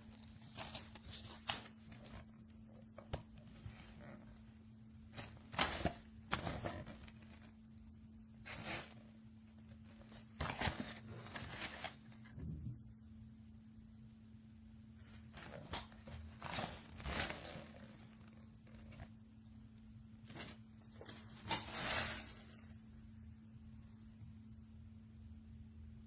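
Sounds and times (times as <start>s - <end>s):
handling rustles: 0.0s - 4.5s, 8.4s - 9.1s, 9.7s - 12.4s, 15.0s - 19.1s, 20.2s - 22.8s
steady low hum: 0.0s - 26.0s.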